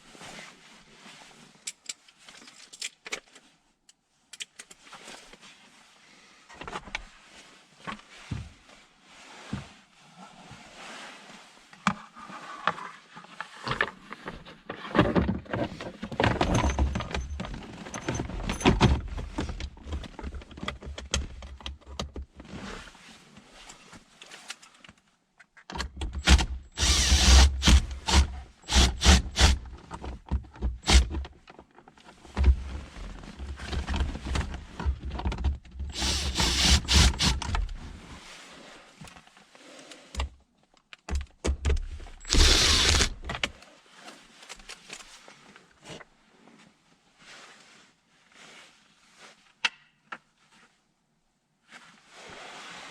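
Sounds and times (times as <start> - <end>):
hand tools thunking and rattling: 15.0 - 21.8.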